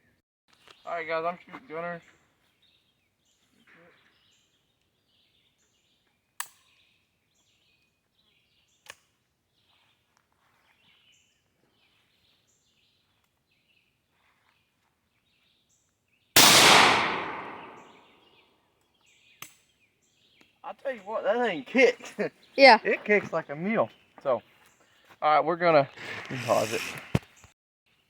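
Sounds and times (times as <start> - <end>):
shotgun blast with echo: 16.4 - 18.0.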